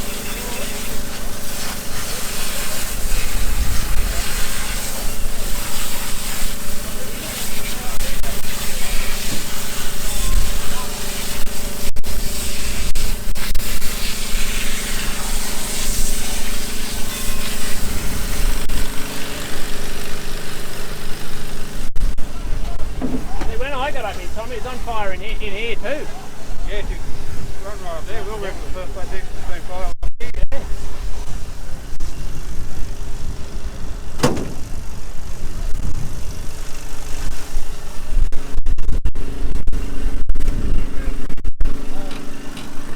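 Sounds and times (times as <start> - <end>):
loud rushing hiss: 0.0 - 38.6
engine running: 0.0 - 42.9
sharp knock: 34.2 - 34.8.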